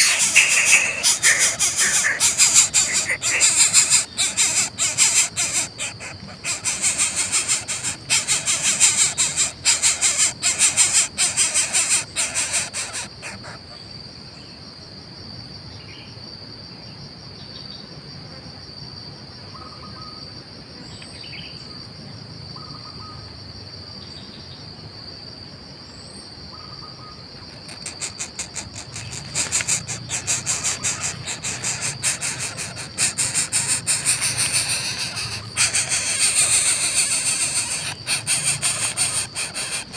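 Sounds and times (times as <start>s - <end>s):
faint short insect chirps: 0.0s - 13.8s, 27.0s - 39.9s
high-pitched insect whine: 0.0s - 13.8s, 27.5s - 39.9s
insects chirring in pulses: 0.0s - 13.9s, 27.4s - 39.9s.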